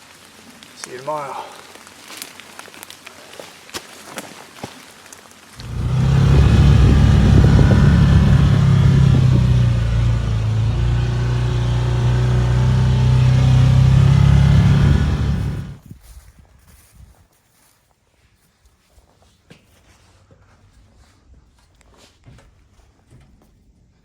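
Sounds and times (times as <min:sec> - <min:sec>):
vehicle engine running: 0:05.6 - 0:15.8.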